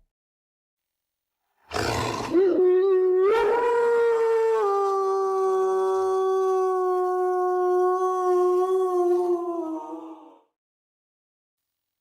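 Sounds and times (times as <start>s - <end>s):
werewolf howl: 2.1s - 10.5s.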